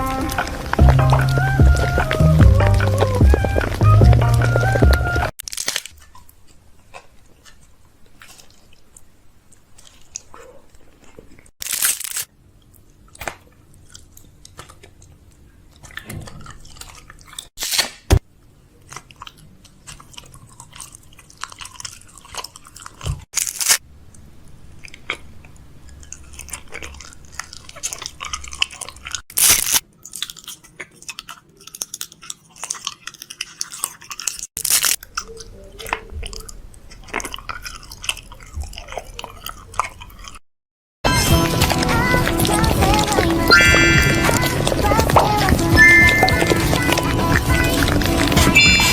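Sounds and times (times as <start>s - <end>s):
loud sharp crunch: 0.0s - 7.6s, 11.6s - 12.3s, 16.0s - 18.2s, 21.5s - 23.8s, 27.9s - 30.6s, 33.7s - 35.2s
chewing clicks: 0.0s - 17.5s, 18.4s - 40.4s, 41.2s - 48.9s.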